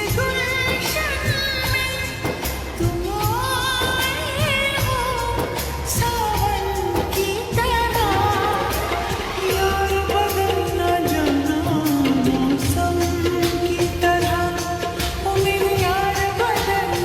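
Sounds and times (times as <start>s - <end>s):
pop song with singer over beat: 0.0s - 17.0s.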